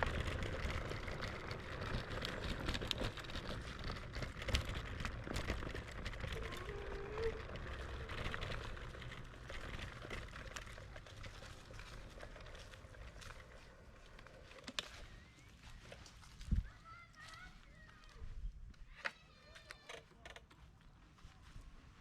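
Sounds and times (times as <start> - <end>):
small rattles and knocks: 0.0 - 15.0
scooter rolling over rough ground: 0.0 - 18.2, 18.8 - 21.6.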